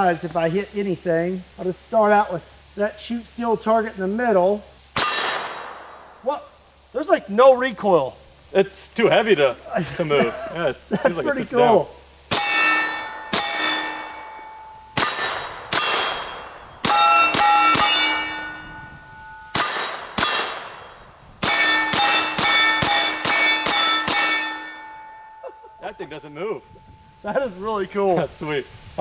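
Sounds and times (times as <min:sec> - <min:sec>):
steel plate ringing clang: 0:05.0 - 0:06.2, 0:12.3 - 0:28.0
rapid gunshots: 0:15.0 - 0:18.3, 0:19.5 - 0:24.5.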